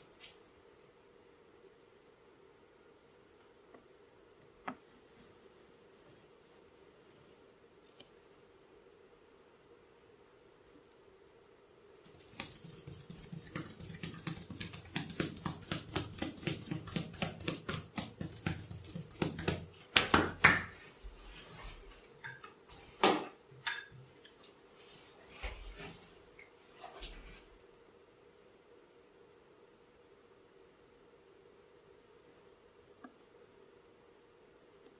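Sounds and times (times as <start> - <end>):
rapid massage tapping: 12.0 - 20.7.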